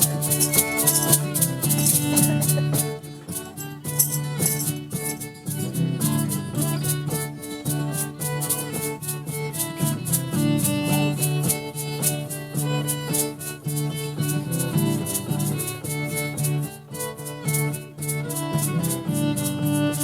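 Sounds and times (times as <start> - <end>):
lively jig tune: 0.0 - 20.0
rattling percussion: 0.0 - 20.0.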